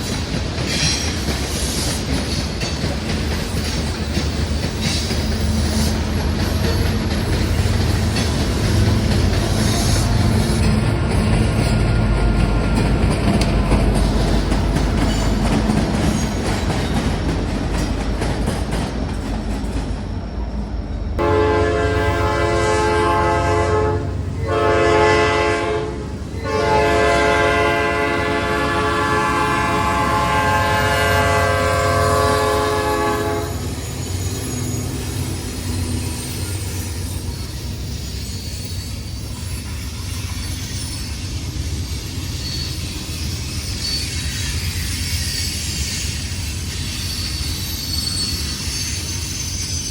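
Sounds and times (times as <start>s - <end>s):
train rumbling and clattering: 0.0s - 49.9s
locomotive air horn: 21.2s - 33.8s.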